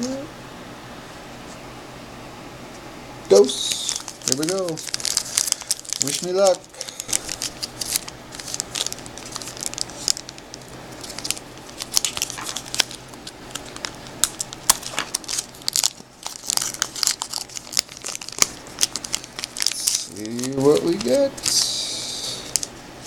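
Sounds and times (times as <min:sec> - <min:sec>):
wrapper being torn and crinkled: 0:03.7 - 0:21.7.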